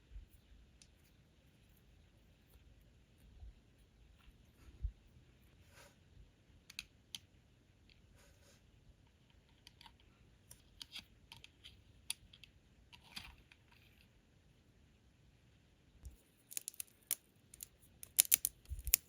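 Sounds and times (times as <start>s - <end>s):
plastic pieces clicking and tapping: 16.0s - 19.0s.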